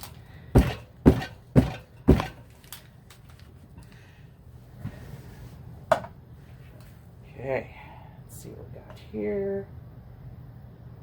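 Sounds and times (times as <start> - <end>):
sharp knocks on hard surface: 0.6 - 2.4.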